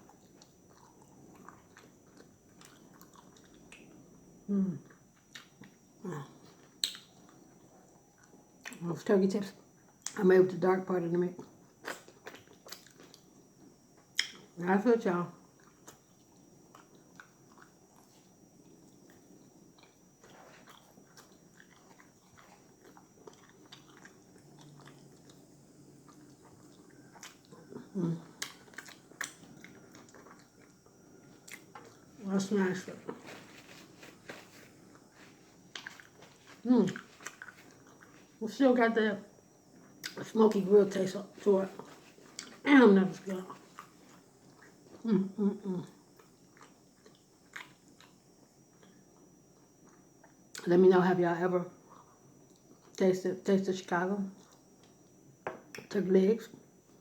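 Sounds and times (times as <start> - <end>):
person chewing meat: 0.0 - 3.9, 11.8 - 13.3, 15.6 - 32.2, 33.0 - 38.4, 41.8 - 42.6, 46.0 - 50.5
wet mouth clicks and smacks: 6.8 - 7.1, 14.2 - 14.4.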